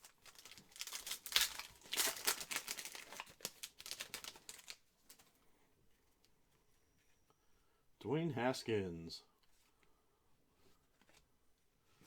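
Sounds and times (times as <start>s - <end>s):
foil wrapper crinkling: 0.0s - 5.4s.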